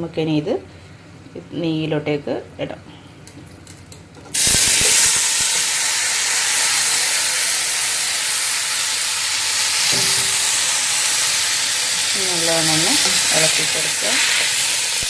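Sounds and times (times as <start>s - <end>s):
rice sizzling in hot fat: 4.4s - 15.0s.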